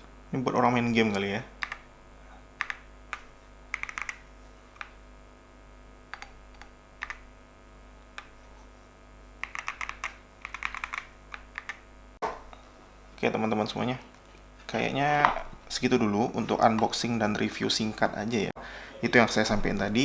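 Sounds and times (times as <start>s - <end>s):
mechanical keyboard keystrokes: 1.6s - 1.8s, 2.6s - 4.2s, 6.1s - 7.2s, 9.4s - 11.8s.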